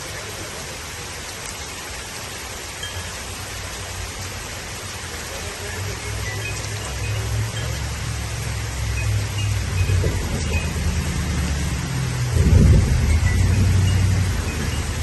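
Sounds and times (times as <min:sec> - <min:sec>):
heavy rain falling: 0:00.0 - 0:15.0.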